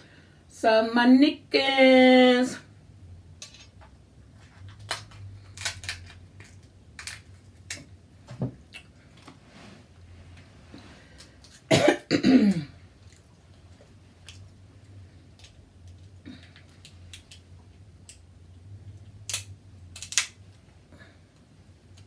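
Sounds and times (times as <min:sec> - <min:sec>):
crab shell cracking: 0:04.8 - 0:07.9, 0:15.4 - 0:17.4, 0:19.3 - 0:20.4
person coughing: 0:11.7 - 0:12.8.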